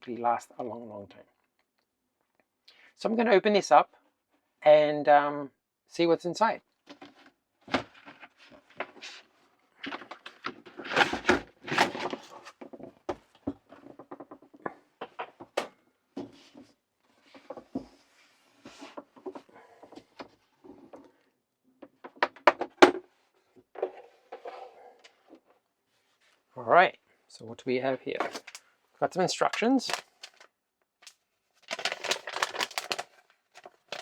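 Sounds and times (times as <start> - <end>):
packaging clicks and knocks: 31.7 - 34.0.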